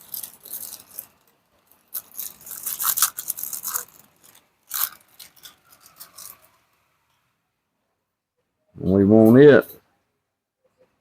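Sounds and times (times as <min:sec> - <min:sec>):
metal hardware scraping and clicking: 0:00.0 - 0:07.3.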